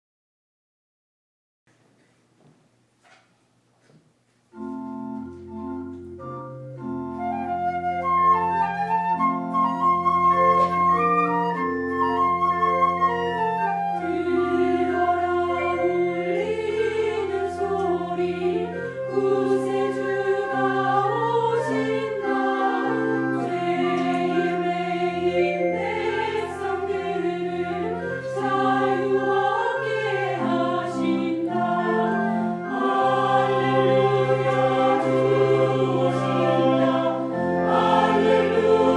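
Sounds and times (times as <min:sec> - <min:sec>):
keyboard chords and melody: 0:04.6 - 0:38.9
church choir singing: 0:10.0 - 0:38.9.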